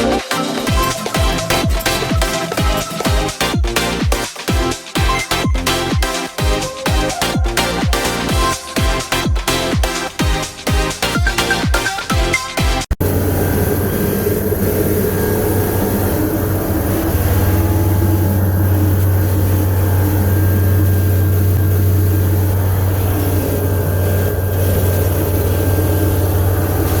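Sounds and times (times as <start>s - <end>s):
propeller airplane engine drone: 13.0s - 27.0s.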